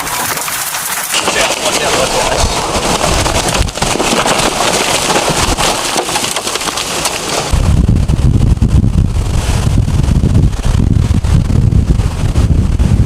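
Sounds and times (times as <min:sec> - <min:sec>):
heavy wind-driven rain pelting: 0:00.0 - 0:13.0
wind buffeting microphone: 0:01.3 - 0:13.0.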